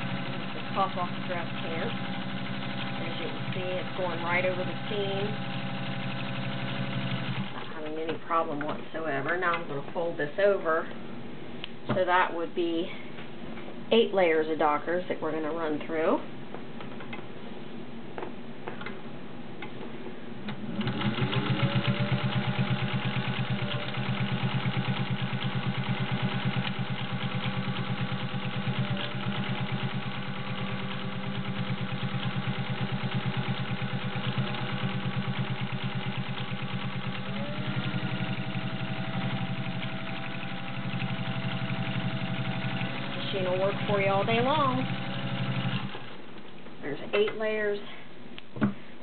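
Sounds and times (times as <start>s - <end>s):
sewing machine motor whine: 0.0s - 7.7s, 20.6s - 46.2s
sewing machine stitching clatter: 0.0s - 7.8s, 20.6s - 46.2s.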